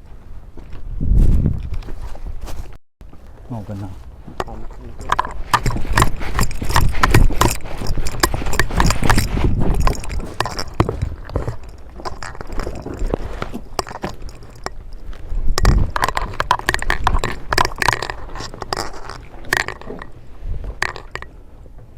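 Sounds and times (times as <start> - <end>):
footsteps crunching on ground: 0.0 - 19.4
clicks and thuds: 4.3 - 21.8.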